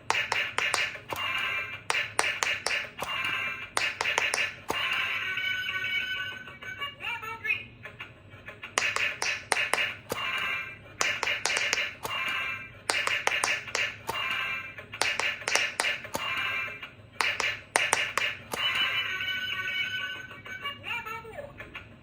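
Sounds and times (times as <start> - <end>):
toy electronic sound effects: 0.0 - 5.7, 8.8 - 14.4, 15.0 - 16.6, 17.2 - 20.0.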